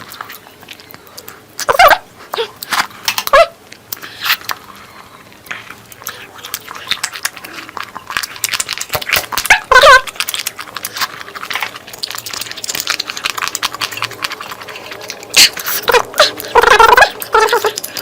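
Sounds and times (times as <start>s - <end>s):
wet chewing and mouth sounds: 0.0s - 18.0s.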